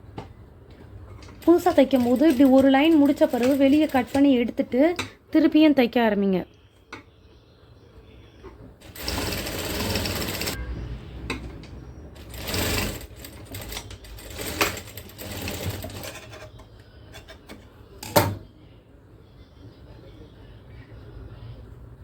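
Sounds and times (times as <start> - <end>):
industrial sewing machine stitching: 1.3 - 4.3, 8.8 - 10.7, 12.2 - 16.5.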